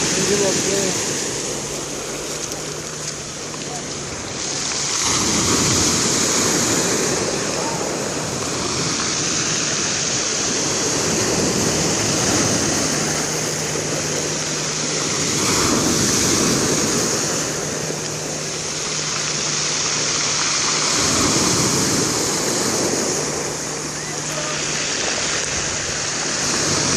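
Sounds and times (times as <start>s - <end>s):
waves breaking on shore: 0.0s - 26.9s.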